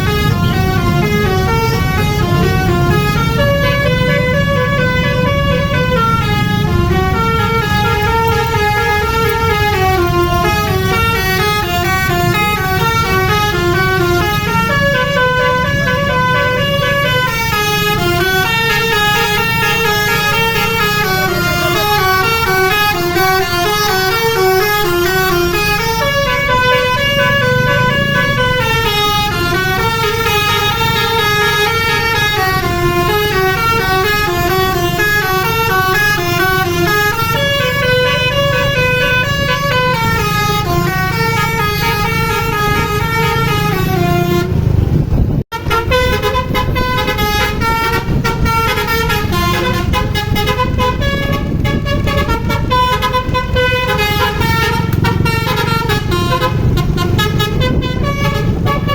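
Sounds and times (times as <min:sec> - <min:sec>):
low vehicle rumble: 0:00.0 - 0:58.9
musical bus horn tune: 0:00.0 - 0:58.9.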